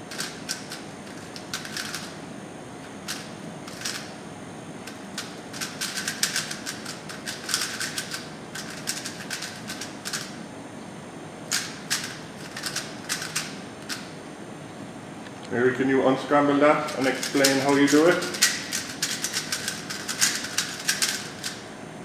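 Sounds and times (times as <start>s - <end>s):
puzzle cube clacking: 4.9s - 10.4s, 11.5s - 14.1s, 16.9s - 21.6s.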